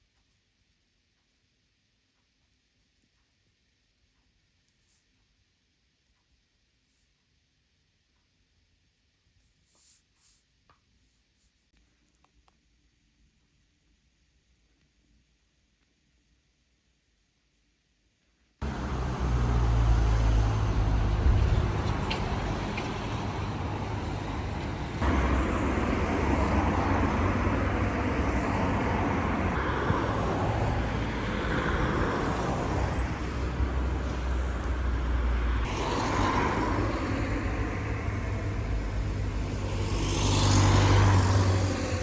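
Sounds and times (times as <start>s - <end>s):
road vehicle rumbling: 18.6s - 42.0s.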